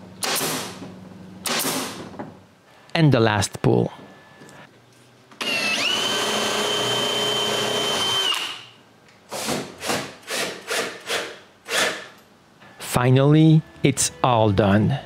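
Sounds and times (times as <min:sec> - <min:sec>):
power drill running: 0:05.4 - 0:08.7.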